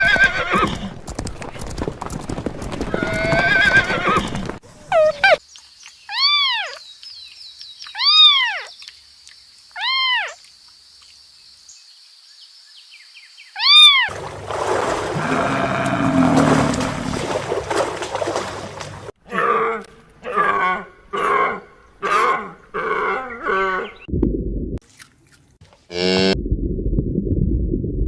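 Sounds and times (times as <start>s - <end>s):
kitten meowing: 9.8s - 10.4s.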